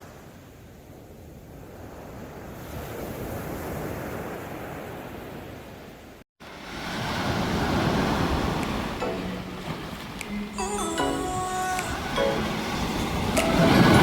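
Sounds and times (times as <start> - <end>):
sea waves washing onto shore: 6.4 - 14.0
wind on microphone: 11.8 - 14.0.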